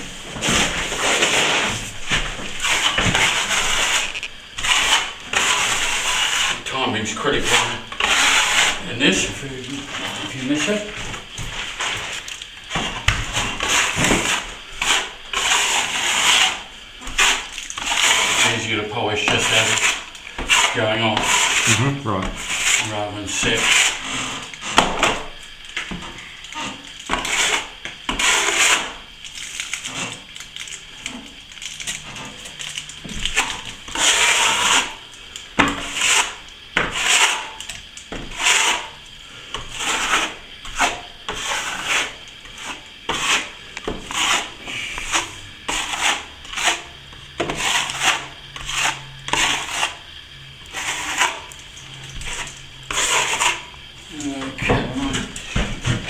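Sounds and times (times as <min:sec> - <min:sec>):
trowel scraping plaster: 0:00.4 - 0:25.3, 0:26.5 - 0:29.1, 0:32.0 - 0:35.0, 0:35.6 - 0:39.0, 0:39.6 - 0:50.0, 0:50.7 - 0:53.8.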